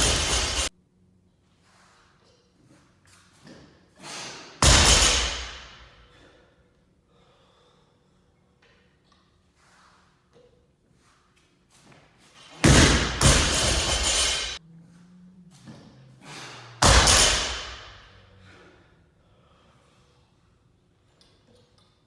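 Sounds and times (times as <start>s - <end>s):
barbell plates thudding on floor: 0.0s - 0.7s, 4.6s - 5.8s, 12.6s - 14.6s, 16.8s - 17.9s.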